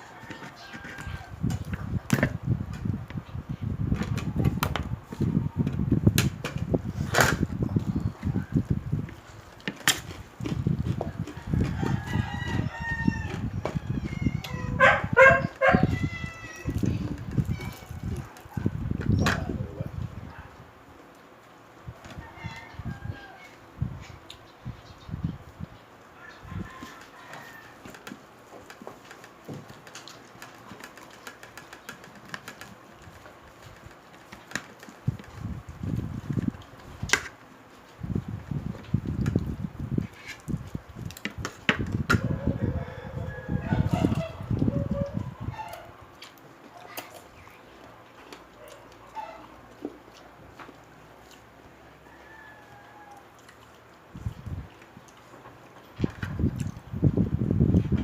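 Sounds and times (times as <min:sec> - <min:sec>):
rooster crowing: 0:00.0 - 0:01.4, 0:11.1 - 0:16.8, 0:22.2 - 0:23.6, 0:26.2 - 0:28.0, 0:42.2 - 0:45.9, 0:51.8 - 0:53.4
chewing crispy food: 0:07.8 - 0:14.7, 0:15.4 - 0:18.9, 0:25.4 - 0:57.0.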